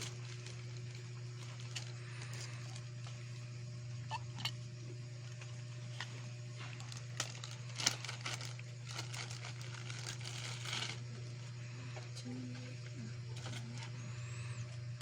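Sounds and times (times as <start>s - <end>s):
packaging crinkling: 0.0s - 3.2s, 5.2s - 11.2s, 13.3s - 14.0s
steady low hum: 0.0s - 15.0s.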